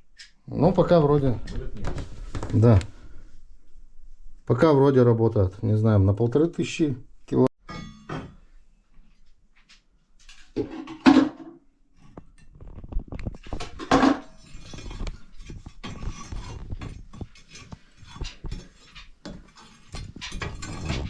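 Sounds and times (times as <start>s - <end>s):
ash and scrap metal scraping: 13.4s - 21.0s.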